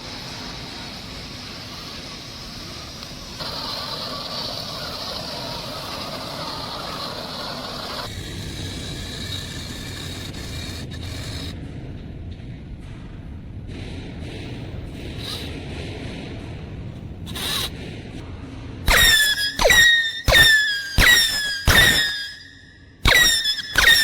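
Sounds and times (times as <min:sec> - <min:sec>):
electric motor and gearbox whining: 0:00.0 - 0:11.6, 0:14.4 - 0:16.1, 0:17.0 - 0:17.9, 0:18.8 - 0:24.0.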